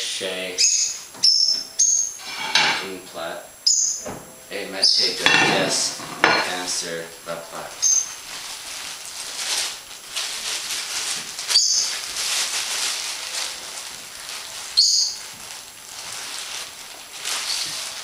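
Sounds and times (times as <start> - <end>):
steady rustling: 2.1 - 2.9, 4.0 - 6.9.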